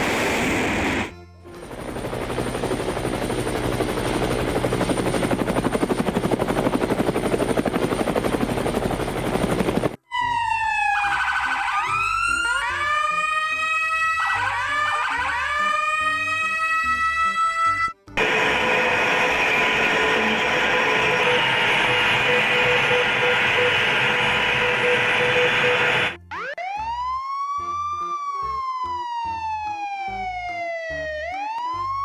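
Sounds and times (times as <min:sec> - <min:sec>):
siren wailing: 0:09.6 - 0:32.0
rough pulsing whirring: 0:18.2 - 0:26.2.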